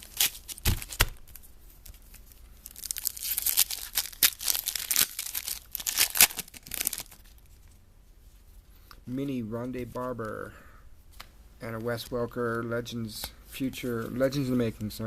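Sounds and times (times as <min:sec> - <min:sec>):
wrapper tearing and crinkling: 0:00.0 - 0:07.4.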